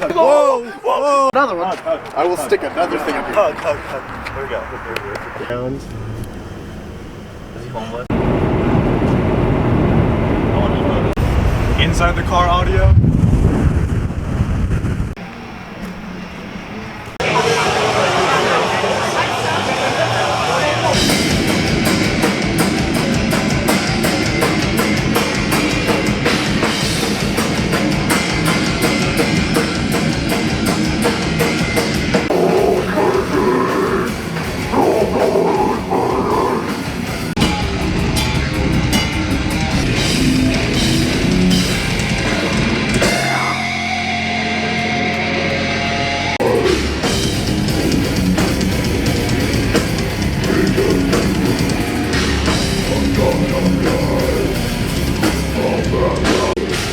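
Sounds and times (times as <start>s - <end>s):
heavy metal music: 15.6s - 56.9s
distorted guitars: 16.6s - 56.9s
pounding drum kit: 17.2s - 45.0s, 46.3s - 56.9s.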